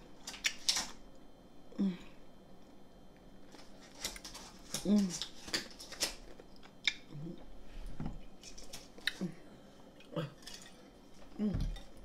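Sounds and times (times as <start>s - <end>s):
chewing and crunching food: 2.6s - 7.5s, 8.2s - 12.0s.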